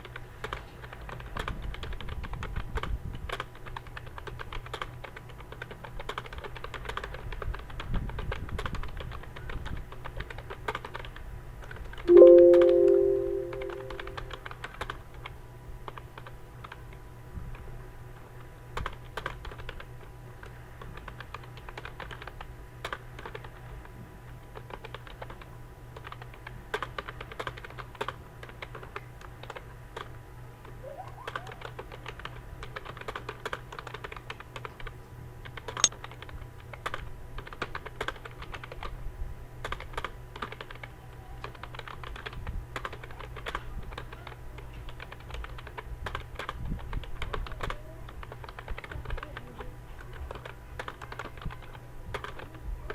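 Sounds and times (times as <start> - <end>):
fast typing on keyboard: 0.0 - 11.2, 20.9 - 23.5, 24.6 - 30.1, 31.3 - 38.9, 39.6 - 44.1, 44.9 - 52.9.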